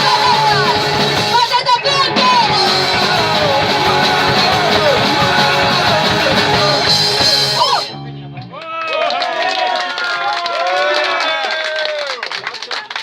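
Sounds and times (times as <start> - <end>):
punk rock band playing live: 0.0 - 8.5.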